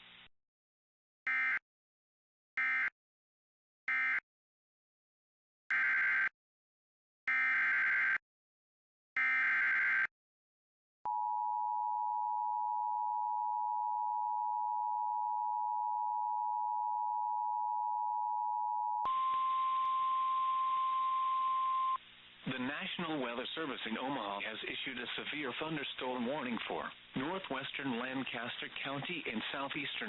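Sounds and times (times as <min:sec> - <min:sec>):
two-tone attention signal: 0:19.0 - 0:22.0
radio hiss: 0:22.3 - 0:30.0.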